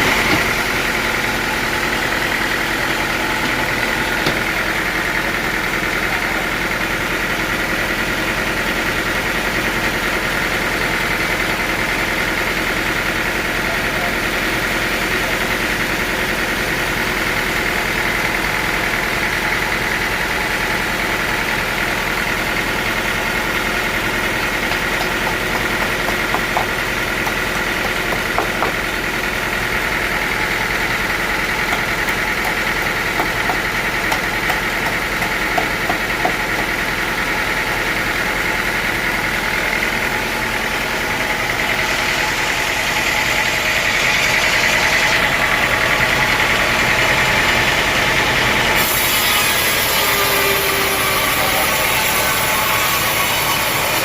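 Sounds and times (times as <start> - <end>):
sawmill saw whining: 0.0 - 54.0.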